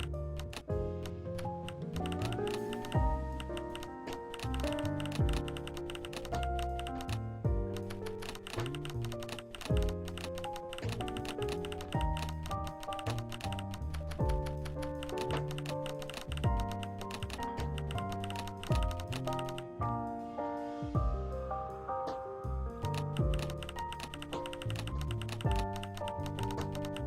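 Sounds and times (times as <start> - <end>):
held notes and chords: 0.0 - 27.0
fast clicking percussion: 23.0 - 27.0.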